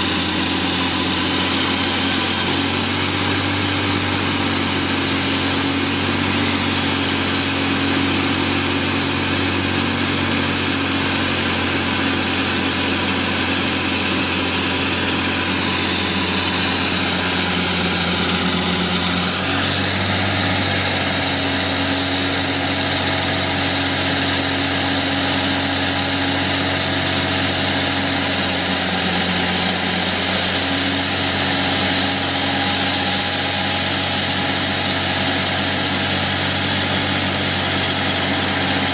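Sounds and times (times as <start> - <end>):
diesel engine running: 0.0 - 38.9
high whine: 13.8 - 23.7.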